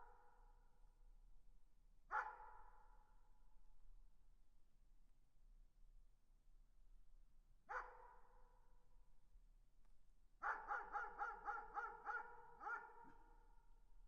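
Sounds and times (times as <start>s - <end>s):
distant dog barking with echo: 2.1s - 2.5s, 7.7s - 8.2s, 10.4s - 13.3s.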